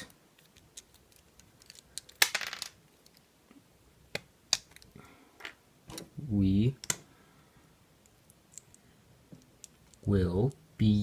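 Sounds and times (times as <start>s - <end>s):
plastic pieces clicking: 0.0s - 3.2s.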